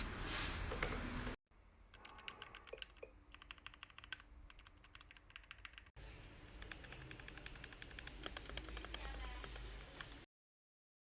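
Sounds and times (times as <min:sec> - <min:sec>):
mechanical keyboard typing: 0:01.9 - 0:05.9, 0:06.5 - 0:10.3.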